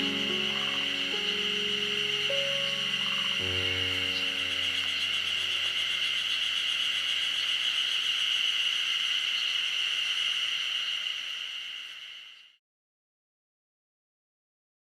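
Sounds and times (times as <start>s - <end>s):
faint background music: 0.0s - 7.7s
cicadas droning: 0.0s - 12.6s.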